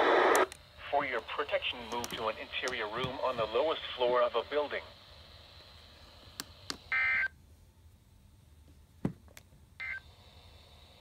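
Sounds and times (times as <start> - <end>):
electronic tone burst: 0.0 - 0.5.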